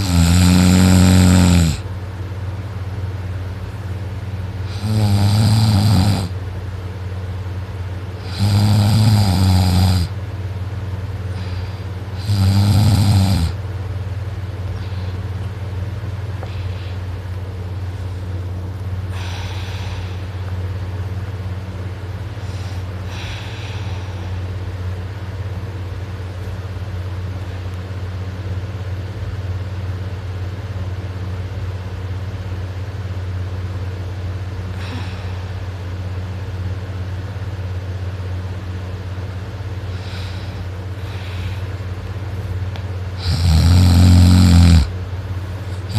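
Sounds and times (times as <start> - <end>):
person snoring: 0.0 - 1.9, 4.6 - 6.4, 8.2 - 10.1, 11.3 - 13.6, 43.2 - 44.9
steady low hum: 0.0 - 45.9
faint breaths: 11.2 - 12.3, 14.6 - 15.7, 16.3 - 20.9, 22.2 - 25.0, 34.6 - 36.0, 39.8 - 43.4.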